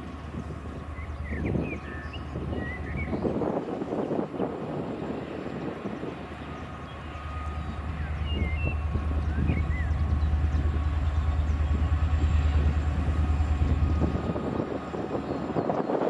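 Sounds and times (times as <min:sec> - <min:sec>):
train locomotive drone: 0:00.0 - 0:16.0
bird chirps: 0:06.5 - 0:11.9.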